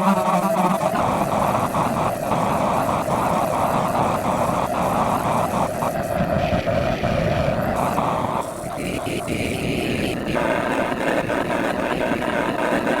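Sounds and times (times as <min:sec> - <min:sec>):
droning granular voice texture: 0:00.0 - 0:13.0.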